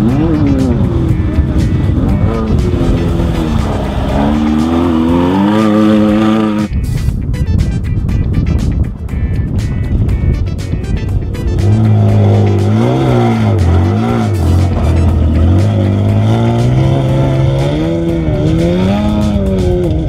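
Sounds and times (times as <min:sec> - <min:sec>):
race truck engine revving: 0:00.0 - 0:06.7, 0:11.0 - 0:20.0.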